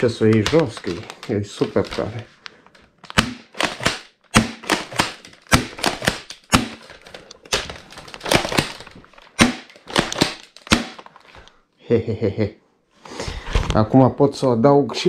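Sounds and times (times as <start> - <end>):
toy shotgun clicks and clacks: 0.2 - 2.2, 3.0 - 8.9.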